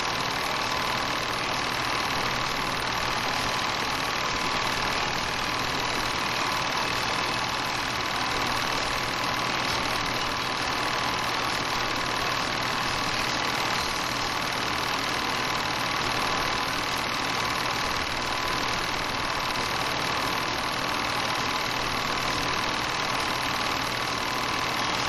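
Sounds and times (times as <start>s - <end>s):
film projector whirring and rattling: 0.0s - 25.0s.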